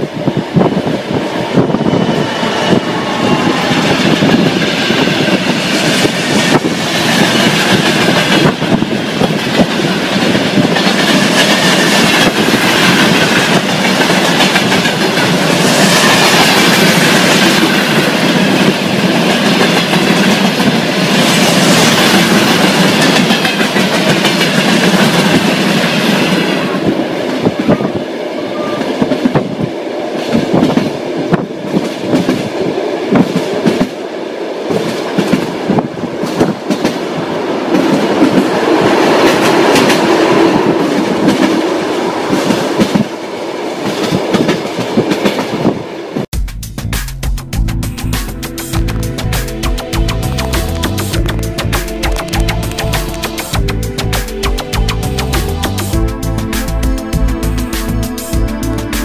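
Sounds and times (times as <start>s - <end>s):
train wheels clattering over rails: 0.6s - 27.7s, 28.8s - 34.0s, 34.6s - 45.8s.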